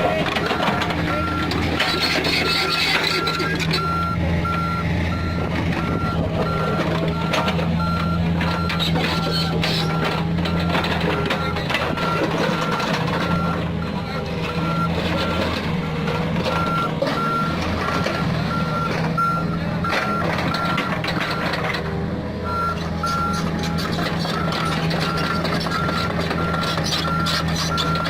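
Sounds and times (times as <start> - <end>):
excavator diesel engine running: 0.0 - 28.0
travel alarm beeping: 0.5 - 10.1, 16.5 - 21.5, 22.5 - 28.0.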